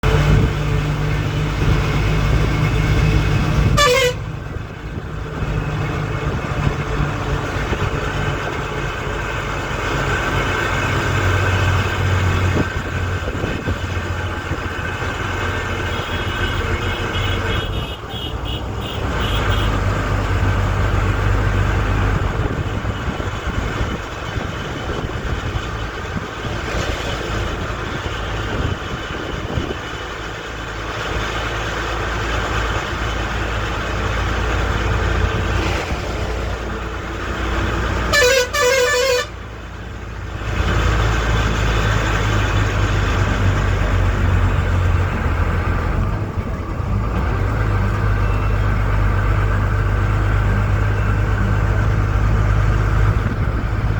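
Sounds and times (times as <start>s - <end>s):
vehicle engine rumbling: 0.0s - 53.9s
vehicle horn honking: 3.7s - 4.3s, 15.8s - 19.8s, 38.1s - 39.4s.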